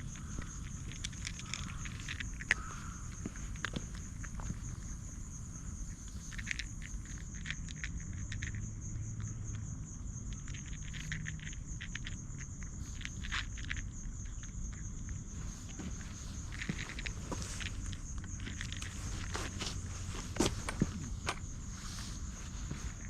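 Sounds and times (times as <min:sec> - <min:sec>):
insect trill: 0:00.0 - 0:23.0
ticking steps: 0:00.0 - 0:23.0
light rustling: 0:14.4 - 0:23.0.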